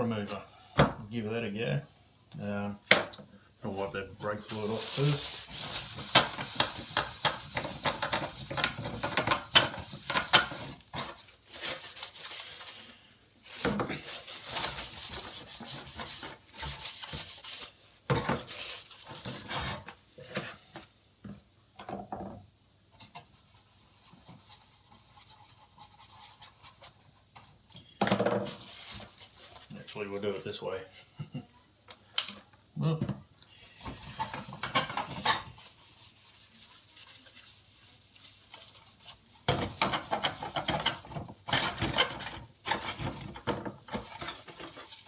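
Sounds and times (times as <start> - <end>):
cloth rubbing on hard plastic: 4.2 - 17.8, 23.3 - 27.2, 34.0 - 43.2.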